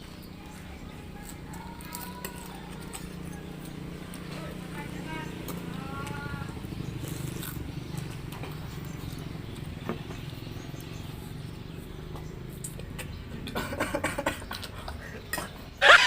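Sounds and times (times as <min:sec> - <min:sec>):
chewing and slurping noodles: 0:06.7 - 0:09.8.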